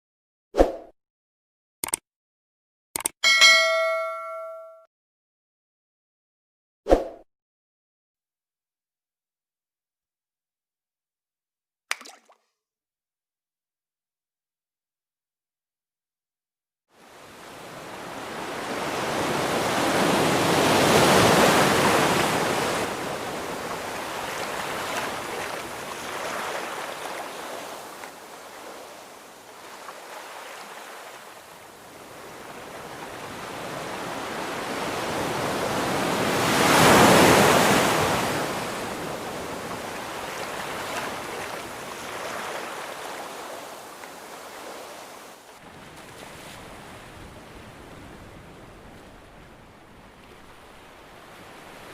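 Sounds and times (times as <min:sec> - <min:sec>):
ocean waves breaking: 0:17.0 - 0:51.9.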